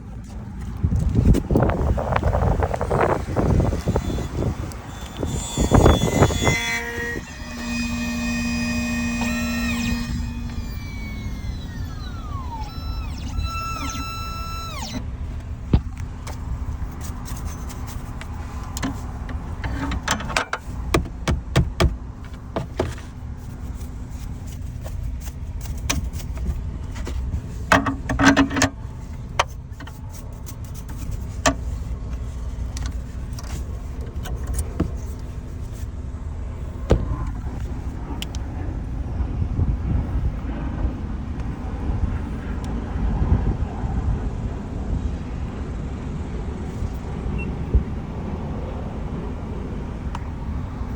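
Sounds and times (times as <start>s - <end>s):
sharp clicks and light knocks: 9.2s - 23.1s
steady low rumble: 28.8s - 50.9s.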